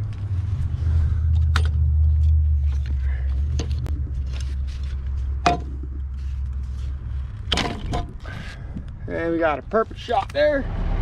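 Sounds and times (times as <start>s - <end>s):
sharp clicks and knocks: 3.5s - 6.1s
heavy equipment engine rumbling: 10.5s - 11.0s.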